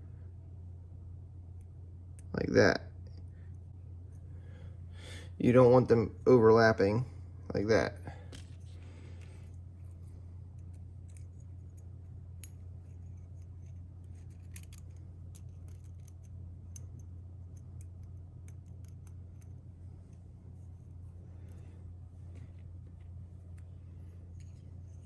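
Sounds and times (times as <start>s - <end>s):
steady low hum: 0.0s - 25.0s
small metallic clicks: 10.6s - 20.2s.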